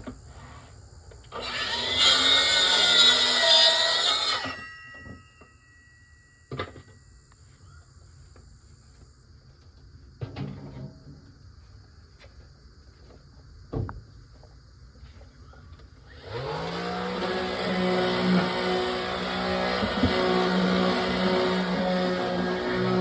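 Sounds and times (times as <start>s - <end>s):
motor spinning up and running: 16.1s - 23.0s.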